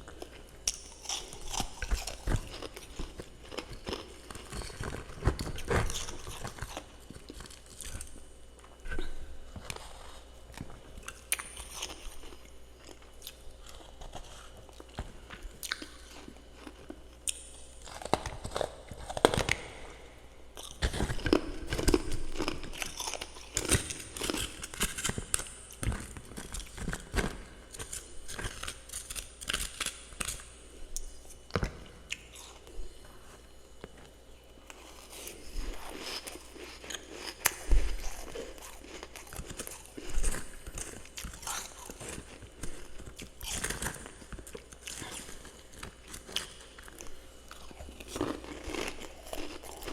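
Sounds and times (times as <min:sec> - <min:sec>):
person crunching frost: 0:32.1 - 0:49.9.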